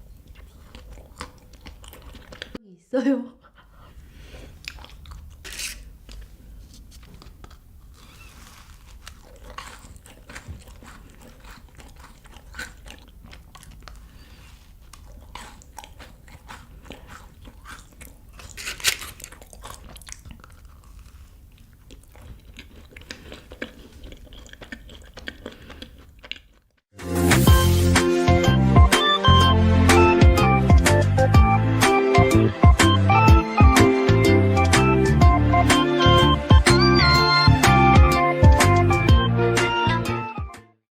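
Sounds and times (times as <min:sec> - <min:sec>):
crunching bites and wet chewing: 0:00.0 - 0:02.6, 0:04.4 - 0:26.8.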